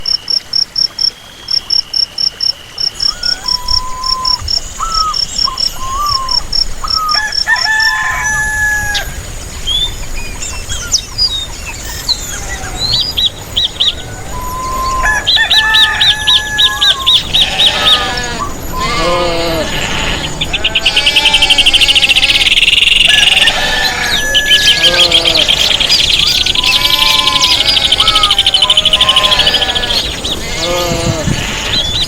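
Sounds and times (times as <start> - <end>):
crickets chirping: 0.0 - 10.4, 11.5 - 32.0
songbirds chirping and trilling: 2.4 - 32.0
rooster crowing: 6.9 - 9.3, 14.2 - 32.0.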